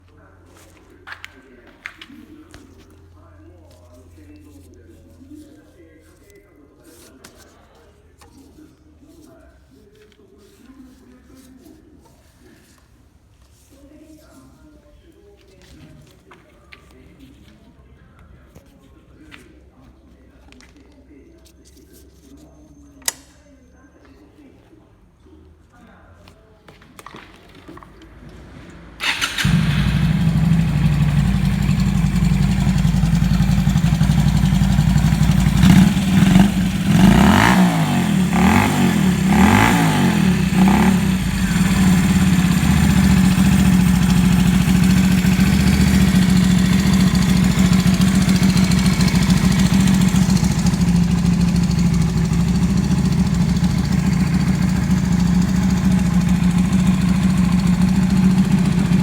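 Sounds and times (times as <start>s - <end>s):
motorcycle engine idling: 29.0s - 59.0s
motorcycle engine revving: 29.0s - 59.0s.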